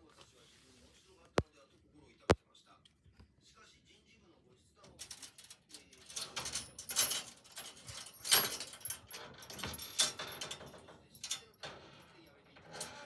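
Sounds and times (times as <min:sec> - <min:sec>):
scraping clatters: 0:04.9 - 0:13.0.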